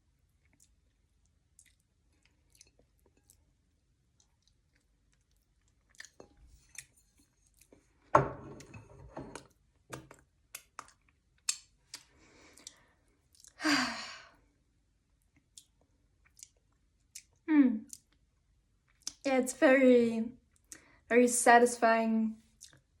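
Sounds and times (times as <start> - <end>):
wet chewing and mouth clicks: 0.0 - 8.1, 9.3 - 13.6, 15.2 - 19.2, 20.4 - 21.0, 22.4 - 23.0
person sighing: 13.6 - 14.3.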